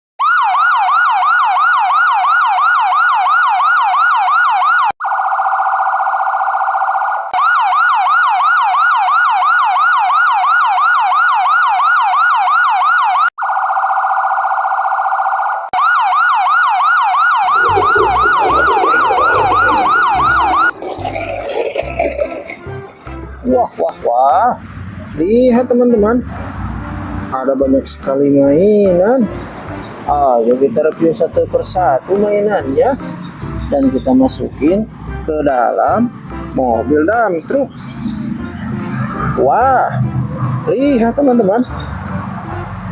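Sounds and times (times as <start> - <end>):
emergency siren yelping: 0.2 - 23.7.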